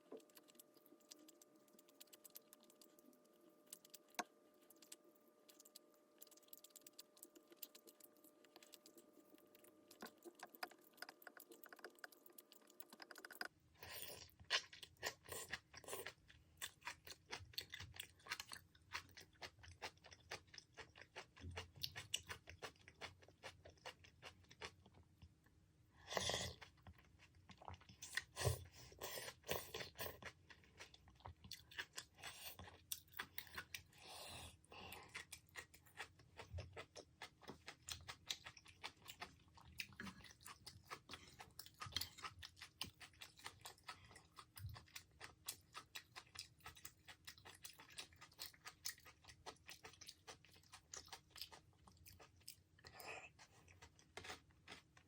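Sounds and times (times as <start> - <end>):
faint steady hum: 0.0 - 55.0
person chewing food: 0.0 - 55.0.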